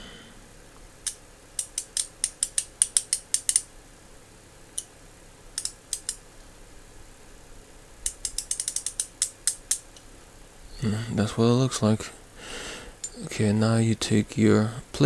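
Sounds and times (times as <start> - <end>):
ratchet clicking: 1.0 - 3.7, 5.5 - 6.2, 8.0 - 10.0.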